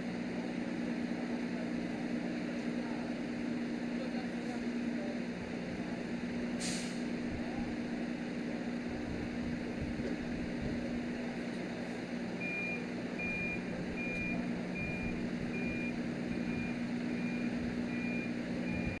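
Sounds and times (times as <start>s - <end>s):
engine humming: 0.0s - 19.0s
reversing alarm beeps: 12.4s - 19.0s.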